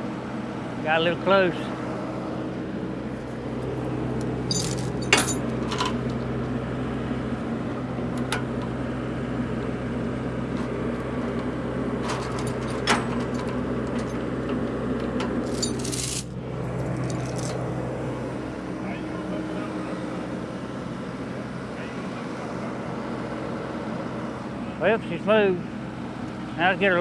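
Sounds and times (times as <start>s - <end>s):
excavator diesel engine running: 0.6s - 27.0s
metallic clinks and clanks: 4.4s - 6.3s, 10.5s - 17.7s.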